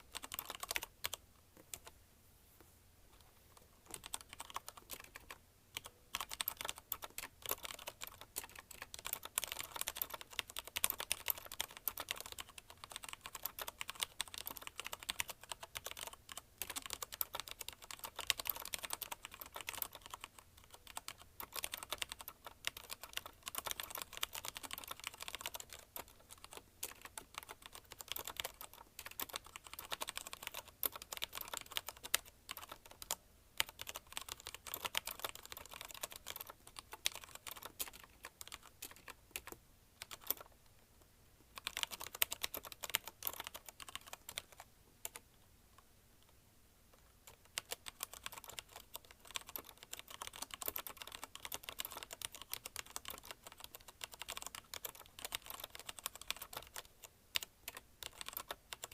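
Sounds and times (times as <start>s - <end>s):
mechanical keyboard typing: 0.0s - 1.9s, 3.8s - 40.5s, 41.6s - 45.2s, 47.2s - 58.9s.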